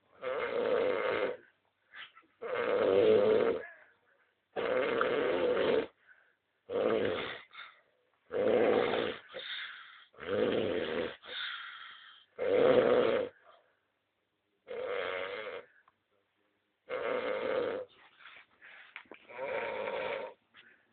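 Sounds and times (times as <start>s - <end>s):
loud snoring: 0.2s - 1.5s, 2.4s - 3.7s, 4.6s - 6.0s, 6.7s - 7.7s, 8.3s - 13.4s, 14.7s - 15.7s, 16.9s - 17.9s, 19.3s - 20.4s.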